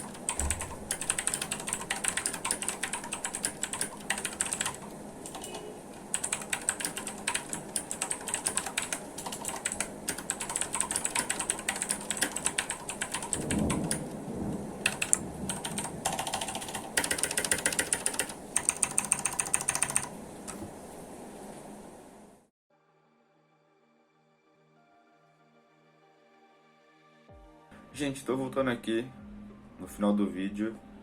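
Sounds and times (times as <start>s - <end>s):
mechanical keyboard typing: 0.0s - 14.1s, 14.8s - 20.6s.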